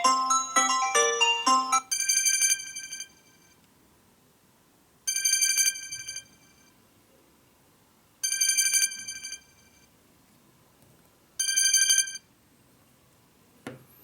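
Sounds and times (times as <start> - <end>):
electronic bell ringtone with trill: 0.0 - 3.2.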